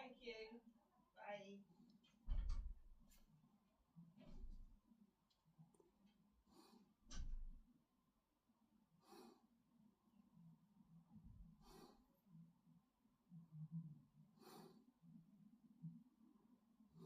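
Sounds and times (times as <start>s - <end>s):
sniffly nose breathing: 9.0s - 9.5s, 11.6s - 12.1s, 14.4s - 14.9s.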